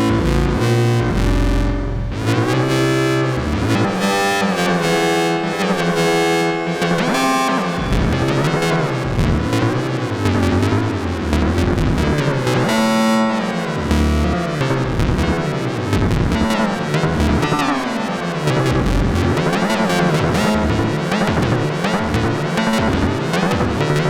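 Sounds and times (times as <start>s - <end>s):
buzzy synthesizer tone: 0.0s - 3.8s, 6.3s - 12.9s, 13.8s - 22.2s
low synthesizer pitch sweeps: 0.0s - 3.8s, 7.6s - 12.3s, 18.4s - 21.0s
synthesizer rattling pulse: 7.8s - 12.7s, 18.4s - 21.6s.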